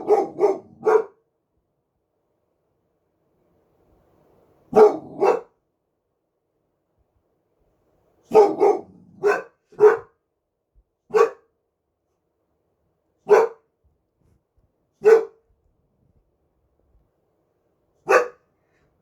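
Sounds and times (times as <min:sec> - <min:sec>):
dog barking: 0:00.0 - 0:01.2, 0:04.7 - 0:05.6, 0:08.3 - 0:10.2, 0:11.1 - 0:11.5, 0:13.2 - 0:13.7, 0:15.0 - 0:15.5, 0:18.0 - 0:18.5.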